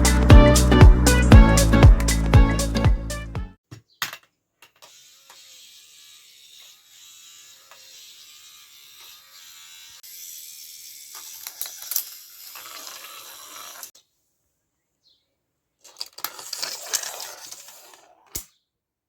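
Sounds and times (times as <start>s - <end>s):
marbles rolling on plastic track: 11.4s - 13.9s, 15.9s - 18.4s.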